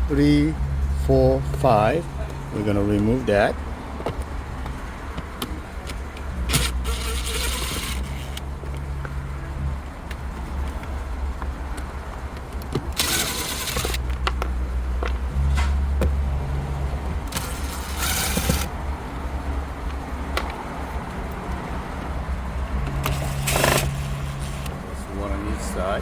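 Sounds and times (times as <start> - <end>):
steady low hum: 0.0 - 26.0
power screwdriver whirring: 6.5 - 8.4, 12.9 - 14.0, 17.3 - 18.7, 23.0 - 24.7.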